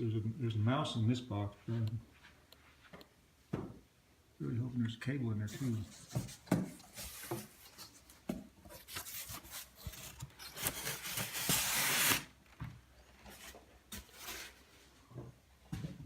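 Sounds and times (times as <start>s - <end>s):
packaging rustling: 6.8s - 12.3s.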